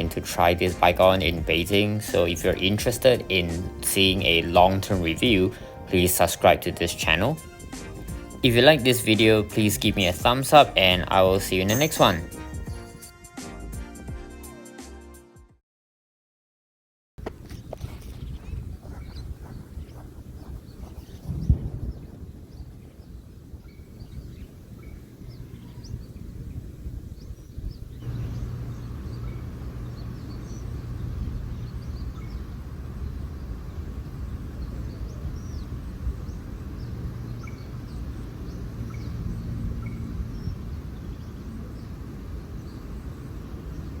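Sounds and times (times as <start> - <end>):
small birds chirping: 0.0 - 12.8, 17.2 - 44.0
low background rumble: 17.3 - 44.0.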